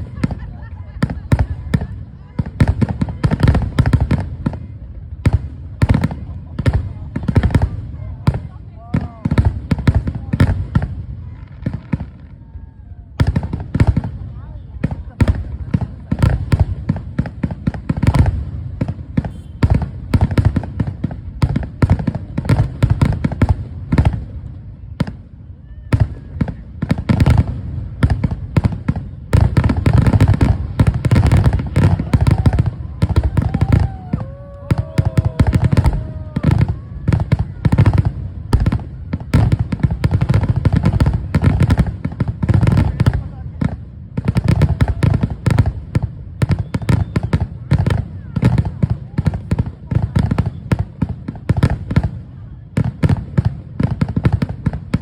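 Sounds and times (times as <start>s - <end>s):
fireworks booming and crackling: 0.0s - 55.0s.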